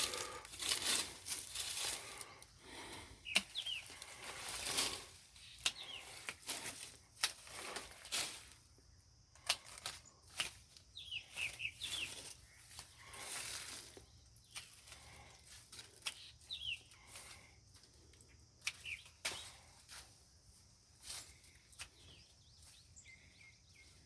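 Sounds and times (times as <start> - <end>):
branches rustling and swishing: 0.0 - 8.8, 9.4 - 17.4, 18.6 - 22.8
bird chirps: 3.2 - 4.2, 5.2 - 6.3, 10.8 - 15.3, 15.9 - 17.6, 18.2 - 19.8, 21.1 - 24.0.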